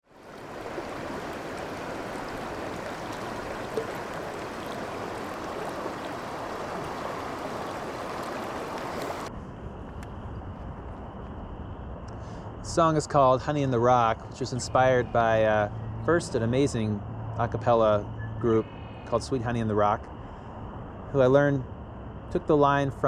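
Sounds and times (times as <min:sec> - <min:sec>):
flowing water rushing: 0:00.0 - 0:09.3
crickets chirring: 0:00.1 - 0:23.0.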